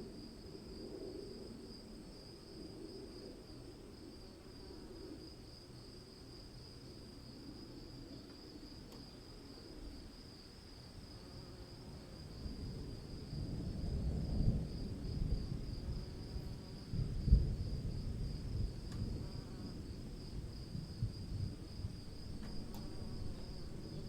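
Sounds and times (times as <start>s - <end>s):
crickets trilling: 0.0s - 24.0s.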